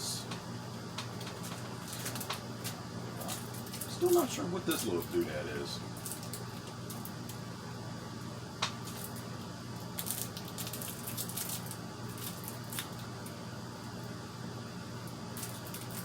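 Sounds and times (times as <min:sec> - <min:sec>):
steady low hum: 0:00.0 - 0:16.0
packaging rustling and crinkling: 0:01.3 - 0:05.2, 0:10.0 - 0:13.0.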